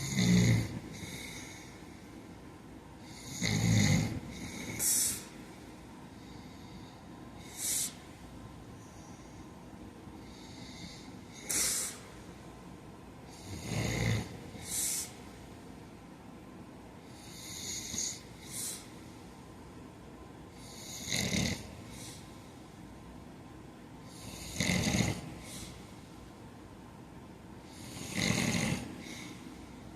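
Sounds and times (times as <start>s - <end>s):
man snoring: 0.0s - 1.6s, 3.1s - 5.2s, 13.3s - 15.0s, 17.2s - 18.3s, 20.6s - 22.0s, 24.1s - 25.4s, 27.7s - 29.3s
hissing breath: 4.8s - 5.4s, 6.3s - 8.1s, 10.3s - 12.1s, 14.6s - 15.2s, 18.4s - 19.0s.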